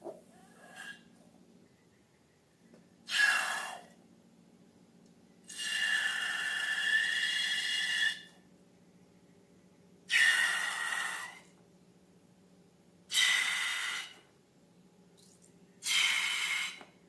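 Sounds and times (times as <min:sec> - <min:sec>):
air hissing from balloon neck: 0:13.1 - 0:14.2, 0:15.8 - 0:16.8.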